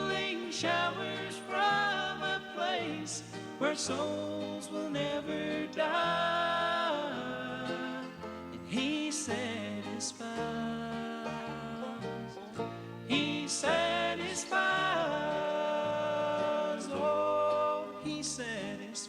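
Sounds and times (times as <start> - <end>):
bass line: 0.0 - 18.6
country gospel singing: 0.0 - 19.0.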